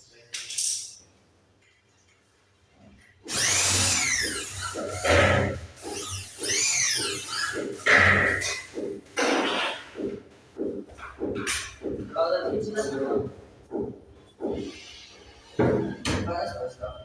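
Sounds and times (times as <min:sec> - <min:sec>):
power drill running in bursts: 0:03.3 - 0:08.9.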